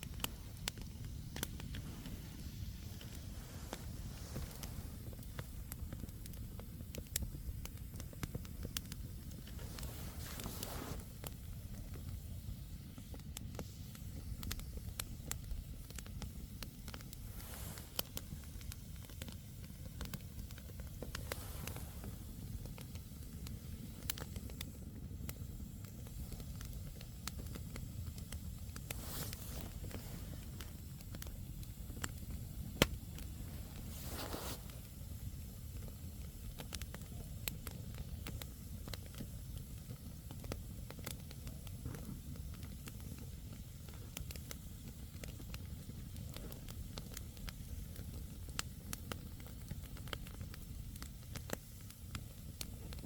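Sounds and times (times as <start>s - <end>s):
campfire crackling: 0.0s - 53.0s
brief hisses: 9.5s - 11.2s, 21.1s - 22.2s, 33.6s - 34.8s.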